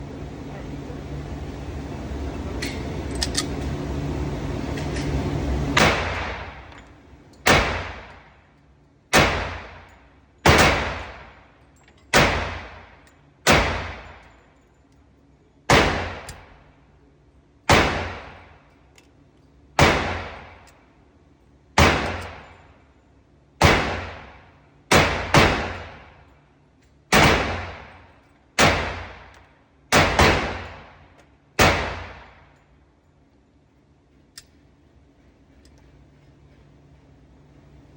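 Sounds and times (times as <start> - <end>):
pistol shots echoing: 5.8 - 6.7, 7.4 - 8.3, 9.1 - 9.8, 10.4 - 11.5, 12.1 - 14.2, 15.7 - 16.5, 17.7 - 18.5, 19.8 - 20.7, 21.8 - 22.5, 23.6 - 26.2, 27.1 - 31.0, 31.6 - 32.4.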